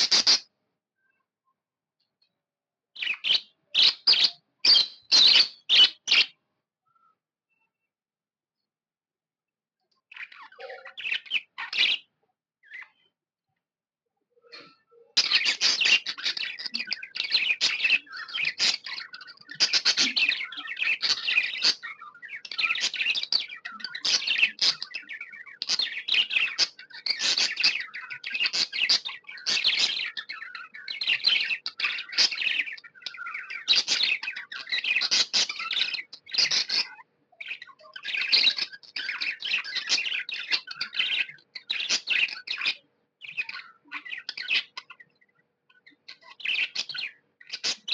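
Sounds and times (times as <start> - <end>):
budgerigar chirping: 0.0 - 0.4, 3.0 - 6.3, 15.2 - 45.0, 45.9 - 47.9.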